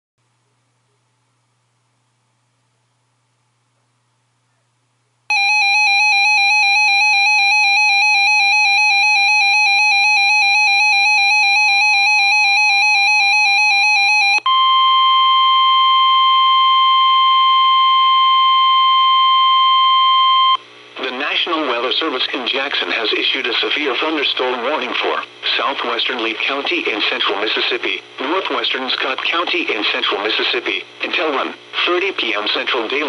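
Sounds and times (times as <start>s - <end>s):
steady warning alarm tone: 5.3s - 20.6s.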